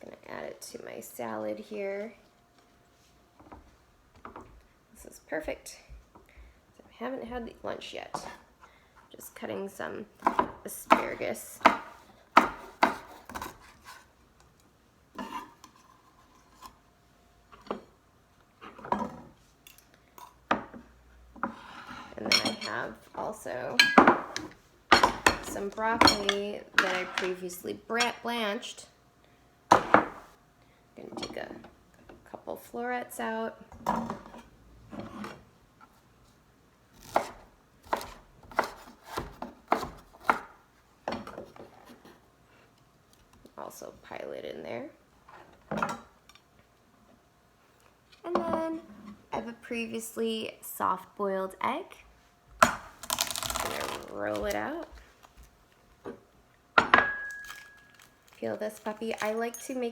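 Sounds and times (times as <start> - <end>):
knife chopping on cutting board: 10.2 - 13.7, 37.0 - 40.5.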